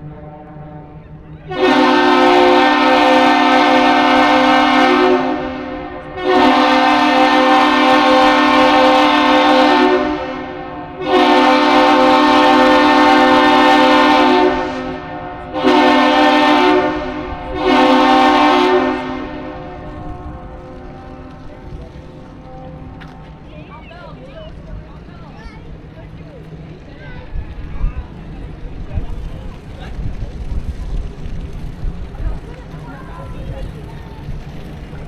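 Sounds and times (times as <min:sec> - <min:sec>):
steam whistle blasts: 0:00.1 - 0:21.4.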